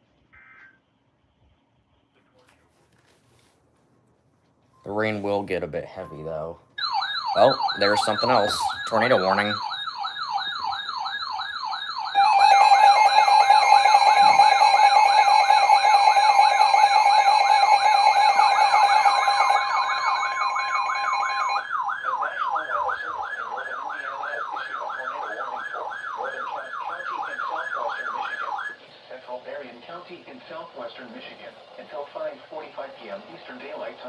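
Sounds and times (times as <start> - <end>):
fast warbling siren: 6.8 - 28.8
two-tone alert signal: 11.8 - 21.6.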